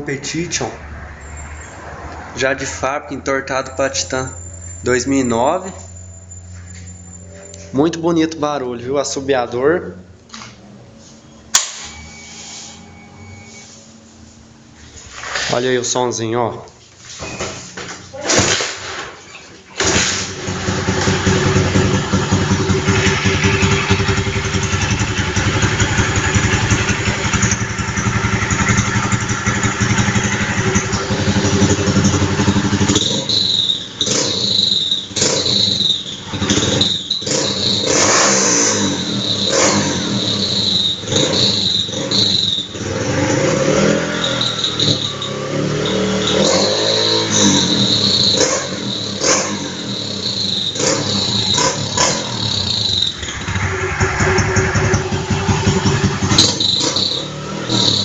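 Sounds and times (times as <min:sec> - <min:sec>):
high whistle from exhaust: 0:04.0 - 0:08.0, 0:11.2 - 0:14.2, 0:22.6 - 0:58.0
motorcycle engine revving: 0:19.8 - 0:58.0.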